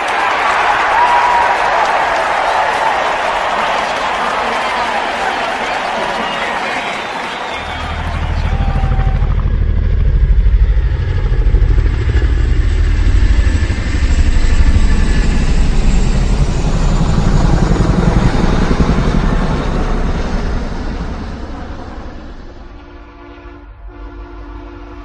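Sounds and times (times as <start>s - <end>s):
vehicle engine throbbing: 7.6s - 24.8s.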